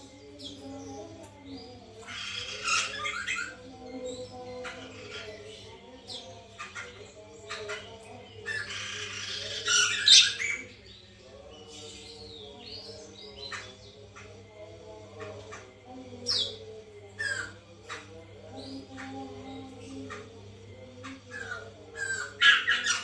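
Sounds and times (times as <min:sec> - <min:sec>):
bird chirps and squawks: 0:02.0 - 0:03.6.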